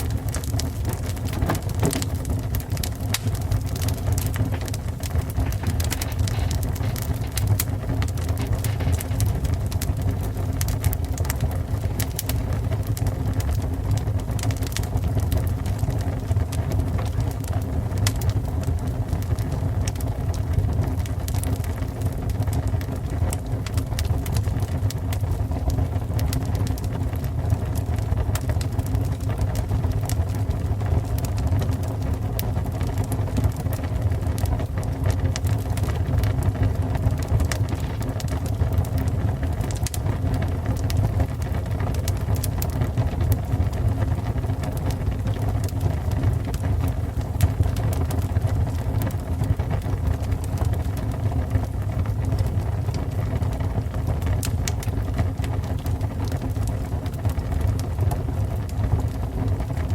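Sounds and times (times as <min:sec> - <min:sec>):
fire crackling and popping: 0:00.0 - 0:59.9
fire rumbling: 0:00.0 - 0:59.9.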